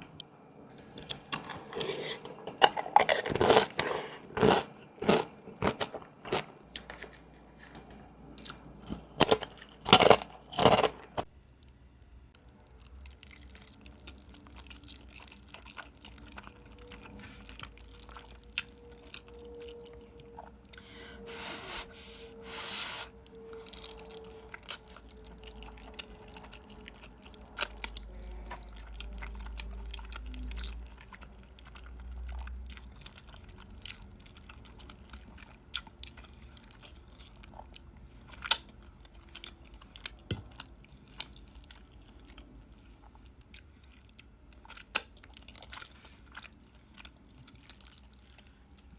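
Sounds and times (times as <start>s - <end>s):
crunching bites: 8.4s - 11.2s
chewing with clicks and smacks: 10.6s - 20.8s, 23.2s - 48.9s.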